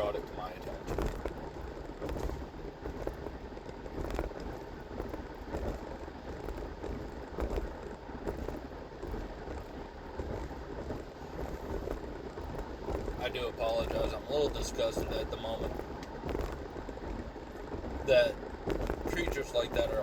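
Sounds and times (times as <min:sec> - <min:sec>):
low rumble and road noise: 0:00.0 - 0:20.0.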